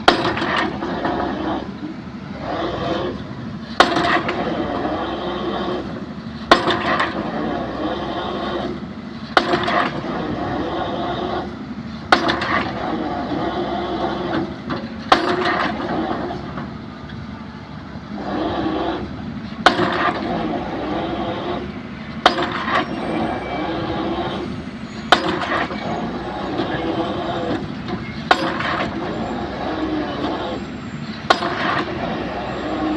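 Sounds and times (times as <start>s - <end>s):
excavator engine running: 0.0s - 32.9s
drop hammer striking concrete: 22.2s - 22.7s, 25.1s - 25.6s, 28.3s - 28.9s.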